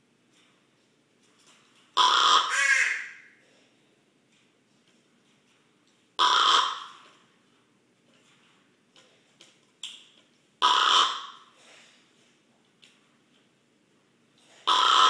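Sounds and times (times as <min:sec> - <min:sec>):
raven raspy snoring call: 0:10.6 - 0:11.5, 0:14.6 - 0:15.0.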